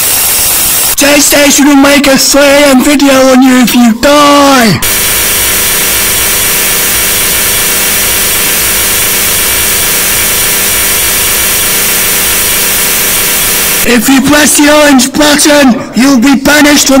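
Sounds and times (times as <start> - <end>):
distorted electronic noise: 0.0 - 1.2, 4.8 - 14.3.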